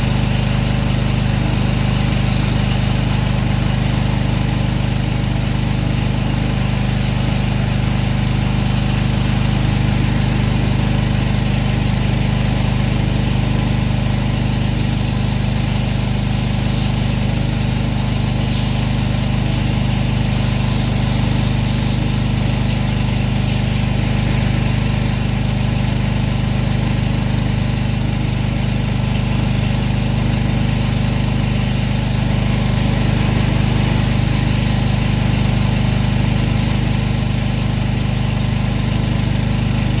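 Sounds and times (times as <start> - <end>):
pressure washer engine running: 0.0 - 40.0.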